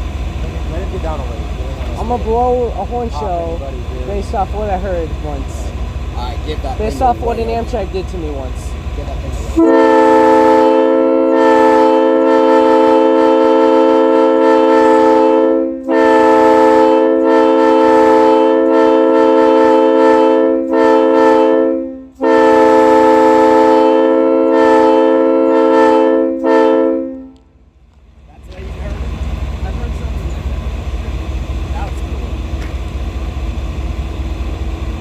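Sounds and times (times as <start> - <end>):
locomotive air horn blasts: 9.4 - 27.7.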